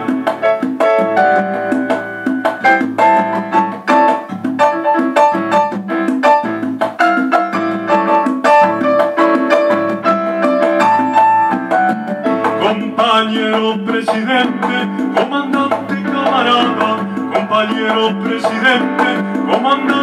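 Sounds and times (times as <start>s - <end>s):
light percussion: 0.0s - 20.0s
piano rhythmic line: 0.0s - 20.0s.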